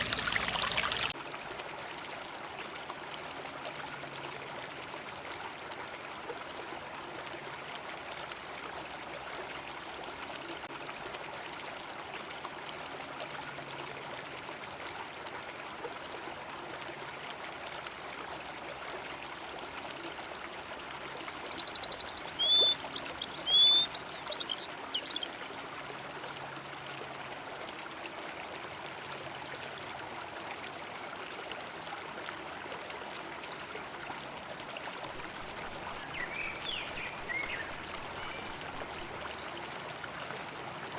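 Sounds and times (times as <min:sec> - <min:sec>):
river water running: 0:00.0 - 0:40.9
small bird trilling and chirping: 0:21.2 - 0:25.3.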